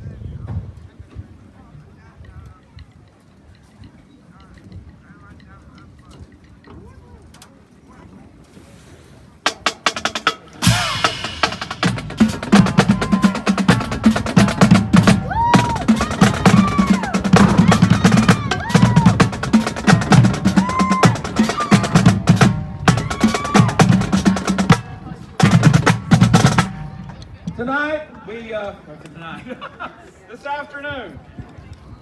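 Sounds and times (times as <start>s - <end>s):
low drum pulse: 10.6s - 27.5s.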